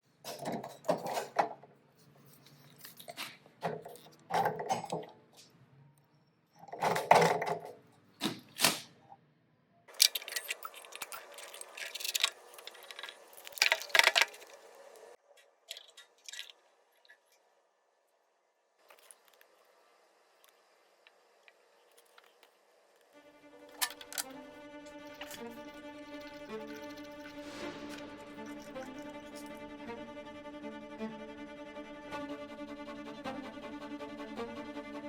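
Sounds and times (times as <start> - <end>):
scraping and clinking bursts: 9.9 - 14.7, 23.6 - 29.6.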